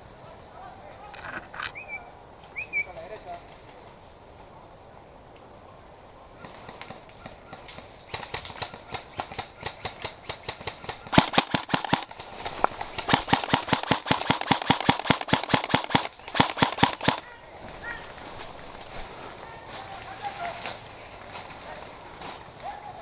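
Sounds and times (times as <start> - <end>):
airsoft guns firing rapidly: 8.1 - 12.2, 12.8 - 17.4.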